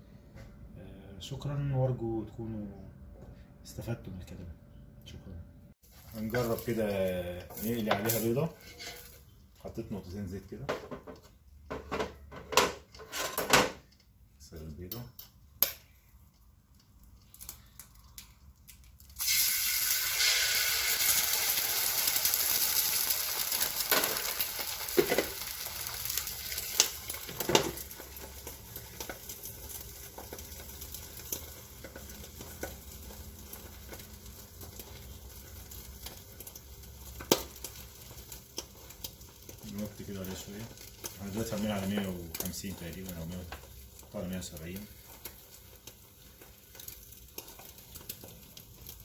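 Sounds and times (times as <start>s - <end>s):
egg sizzling on grill plate: 15.3s - 49.0s.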